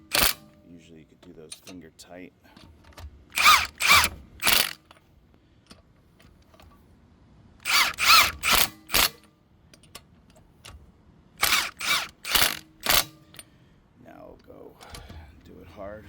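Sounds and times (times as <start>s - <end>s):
impact wrench bursts: 0.0s - 0.6s, 3.0s - 5.0s, 7.6s - 9.3s, 11.4s - 13.4s.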